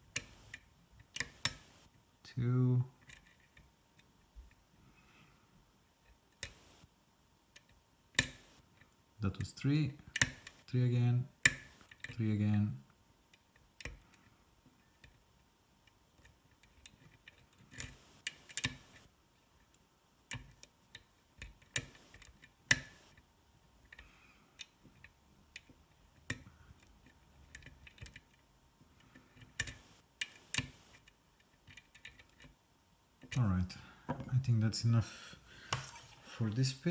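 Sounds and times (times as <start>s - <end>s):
faint scraping: 35.6s - 36.9s.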